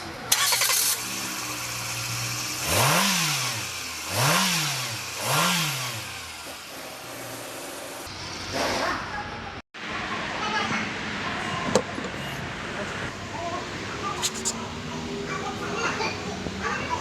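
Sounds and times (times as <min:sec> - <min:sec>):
car engine idling and revving: 0:00.3 - 0:08.1.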